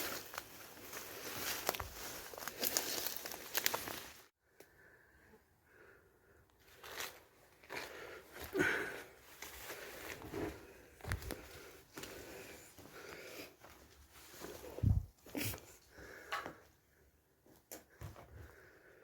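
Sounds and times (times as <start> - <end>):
footsteps crunching over debris: 0.0 - 4.3, 6.6 - 15.4
scattered rustles and crunches: 0.0 - 4.3.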